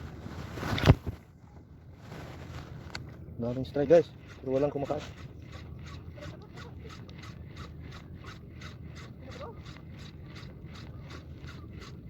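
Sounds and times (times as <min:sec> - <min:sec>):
low steady rumble: 0:00.0 - 0:12.0
fishing reel cranking whir: 0:03.4 - 0:12.0.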